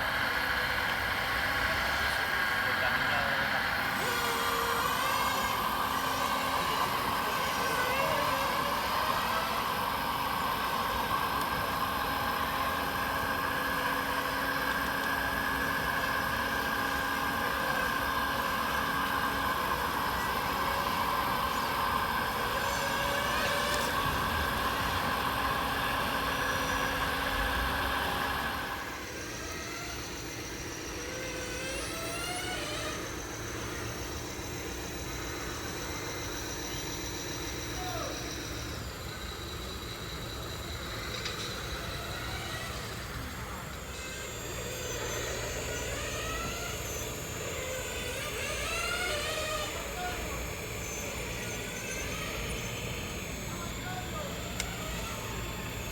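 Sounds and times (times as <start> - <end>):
model truck motor whine: 0.0 - 55.9.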